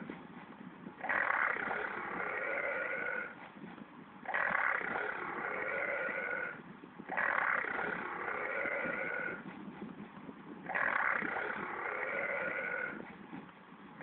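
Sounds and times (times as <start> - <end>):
rabbit burping: 1.0 - 3.4, 4.2 - 9.5, 10.6 - 13.1.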